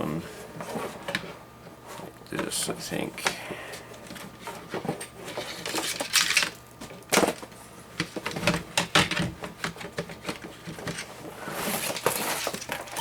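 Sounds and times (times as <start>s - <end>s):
plastic fan clicks and knocks: 8.0s - 11.0s.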